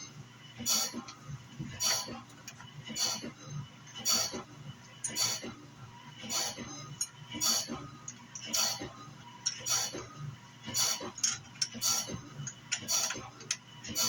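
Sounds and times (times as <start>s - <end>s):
steady motor hum: 0.0s - 14.0s
blade grinding strokes with clicks: 8.4s - 8.9s, 12.8s - 13.3s.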